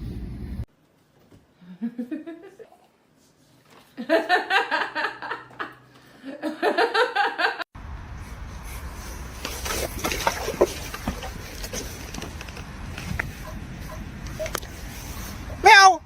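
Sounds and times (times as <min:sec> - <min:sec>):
steady low rumble: 0:00.0 - 0:00.7, 0:07.8 - 0:15.7
person laughing: 0:01.6 - 0:02.8.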